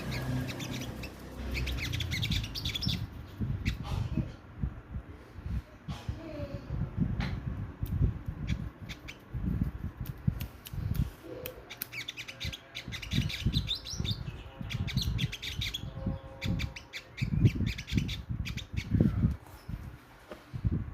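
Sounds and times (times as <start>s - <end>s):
bird high chirps and clicks: 0.0s - 3.8s, 7.8s - 9.3s, 10.0s - 15.9s.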